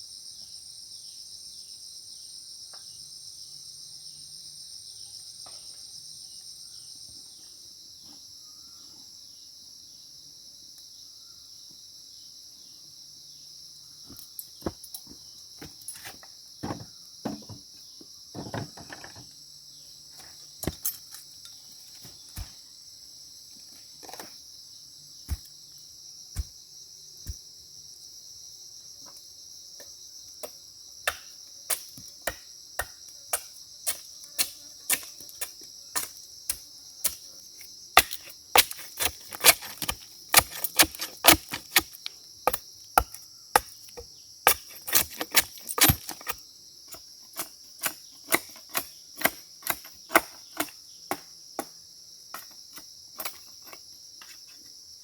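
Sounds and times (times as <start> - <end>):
crickets chirring: 0.0 - 55.0.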